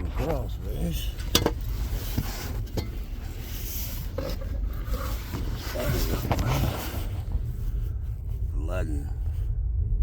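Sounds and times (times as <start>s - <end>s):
steady low rumble: 0.0s - 10.0s
person rubbing and scraping: 1.7s - 8.5s.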